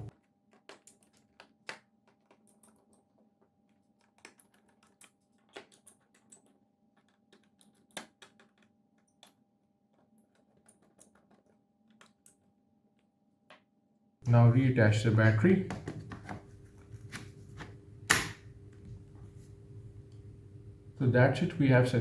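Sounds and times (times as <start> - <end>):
faint steady hum: 14.2 - 22.0.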